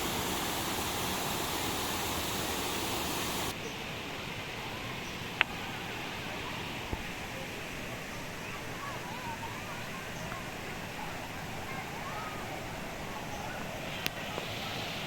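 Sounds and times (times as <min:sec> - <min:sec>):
waterfall rushing: 0:00.0 - 0:03.6.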